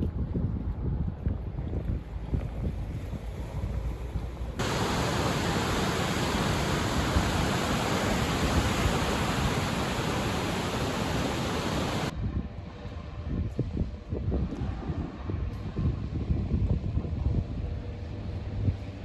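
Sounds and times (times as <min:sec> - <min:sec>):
steady rushing noise: 0:04.6 - 0:12.1.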